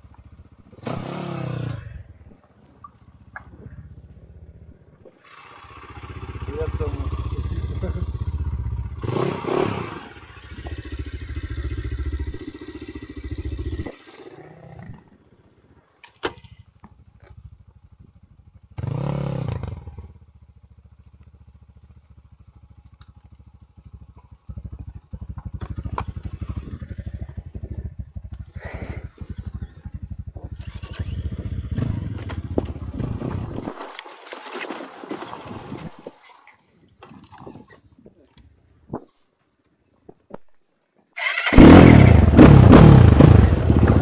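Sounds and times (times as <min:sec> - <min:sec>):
dirt bike engine running: 0:00.0 - 0:14.4, 0:16.6 - 0:33.8, 0:41.2 - 0:44.0.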